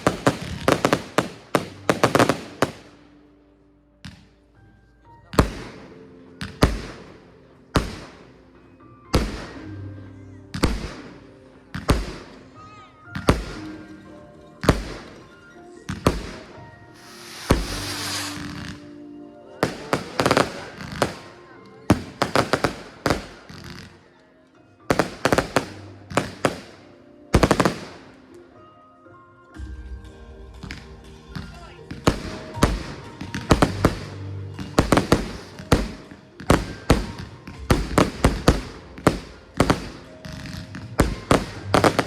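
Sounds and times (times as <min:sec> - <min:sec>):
firework bangs with crackling echo: 0:00.0 - 0:02.9, 0:07.8 - 0:08.2, 0:11.8 - 0:12.3, 0:16.0 - 0:18.9, 0:19.6 - 0:21.3, 0:21.9 - 0:23.8, 0:24.9 - 0:26.7, 0:27.4 - 0:28.1, 0:32.0 - 0:42.0
music playing: 0:00.0 - 0:42.0.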